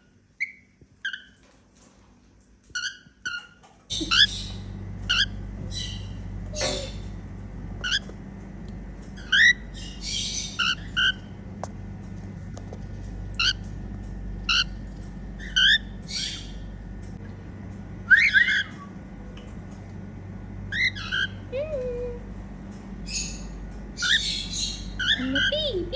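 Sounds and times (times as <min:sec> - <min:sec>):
cockatiel chirping: 0:02.8 - 0:07.1, 0:09.2 - 0:11.3, 0:14.5 - 0:14.8, 0:15.4 - 0:16.6, 0:18.1 - 0:18.9, 0:20.7 - 0:21.4, 0:23.1 - 0:25.7.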